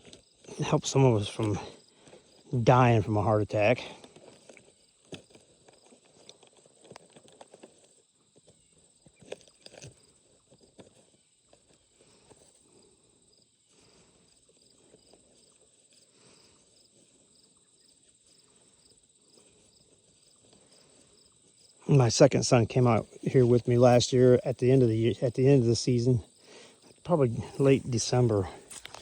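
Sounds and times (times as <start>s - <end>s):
crickets chirping: 0.0s - 29.0s
rustling: 3.8s - 22.1s, 22.7s - 29.0s
faint footsteps: 18.0s - 29.0s.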